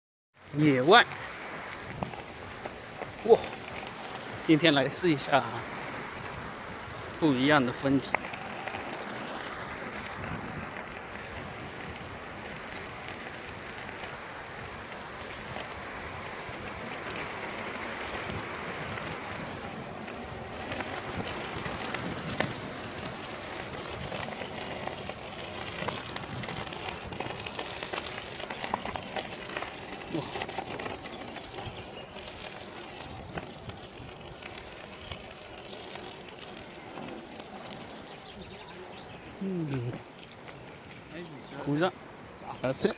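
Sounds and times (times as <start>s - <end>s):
tyres rolling over rough ground: 0.4s - 42.9s
wind on microphone: 5.5s - 7.8s, 8.4s - 35.7s.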